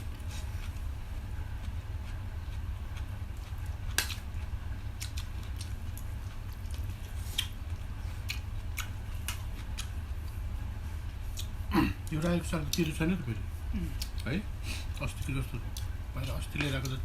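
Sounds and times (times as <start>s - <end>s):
steady low hum: 0.0s - 17.0s
chewing: 1.5s - 10.4s, 11.0s - 13.0s.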